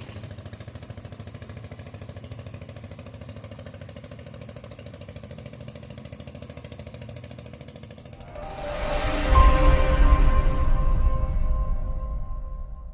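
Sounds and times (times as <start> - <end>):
small engine puttering: 0.0 - 8.2.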